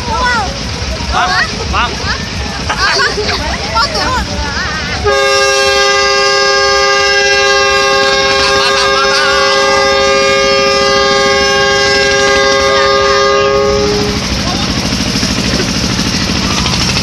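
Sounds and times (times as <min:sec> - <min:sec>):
two-tone horn blast: 0:05.0 - 0:14.3.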